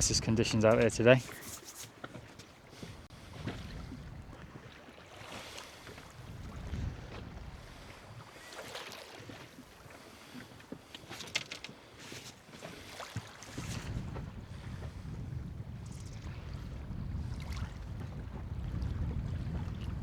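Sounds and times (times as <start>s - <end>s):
wind buffeting microphone: 0.0s - 1.2s, 3.0s - 4.8s, 5.7s - 8.4s, 13.5s - 20.0s
water slapping against boat hull: 8.5s - 14.4s.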